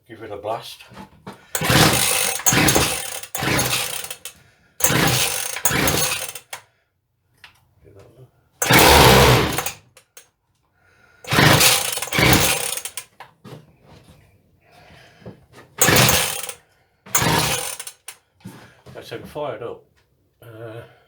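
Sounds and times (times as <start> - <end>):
strimmer engine cranking and firing: 1.6 - 4.1, 4.8 - 6.3, 8.6 - 9.8, 11.3 - 13.0, 15.8 - 16.6, 17.2 - 18.1
recoil starter pulls: 1.6 - 4.2, 4.8 - 6.4, 8.6 - 9.8, 11.3 - 13.0, 15.8 - 16.6, 17.2 - 18.1.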